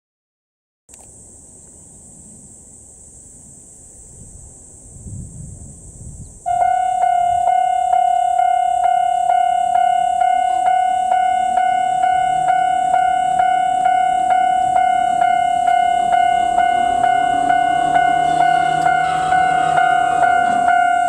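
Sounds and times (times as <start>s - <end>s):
level crossing warning bell: 6.5s - 21.0s.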